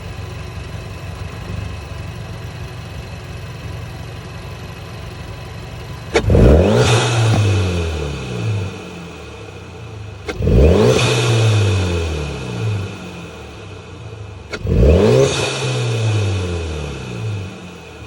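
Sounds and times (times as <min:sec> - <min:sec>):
car engine idling and revving: 0:00.0 - 0:18.0
sharp click: 0:14.5 - 0:14.7.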